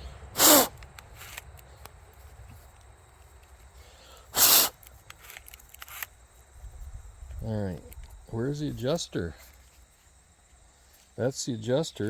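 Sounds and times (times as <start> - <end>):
puff of breath blown: 0.0 - 0.7
faint clicks of parts handled: 0.7 - 3.8, 4.8 - 6.1, 9.3 - 10.1.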